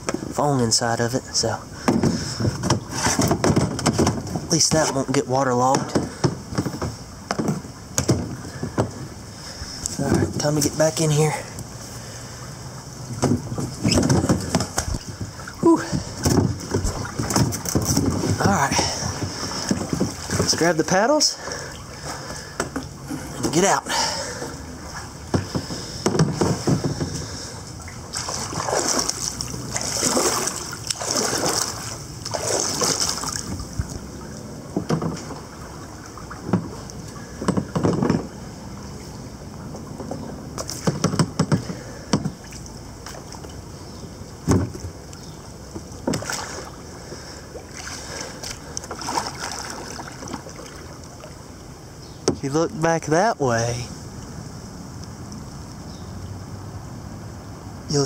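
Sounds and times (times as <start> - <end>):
kayak paddle splashing in water: 11.7 - 39.2, 44.4 - 52.4.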